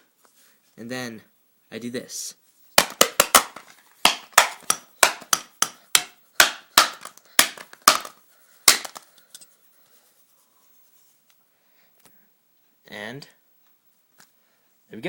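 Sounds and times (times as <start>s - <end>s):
phone being struck: 2.8s - 8.1s.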